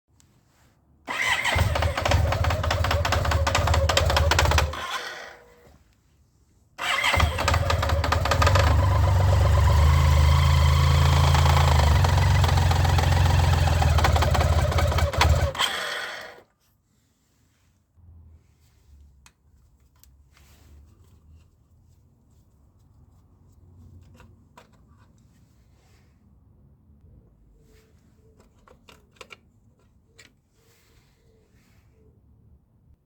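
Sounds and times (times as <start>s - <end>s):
fast metallic clicking: 1.1s - 5.1s
motorcycle engine running at low revs: 7.4s - 15.6s.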